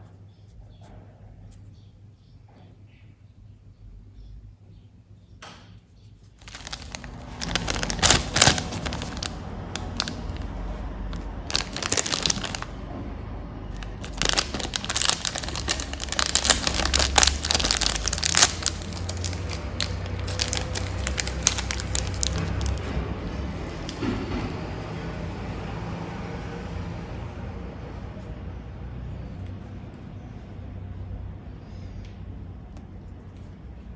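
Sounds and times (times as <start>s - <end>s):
candy wrappers crinkling: 6.4s - 12.8s, 13.6s - 22.9s.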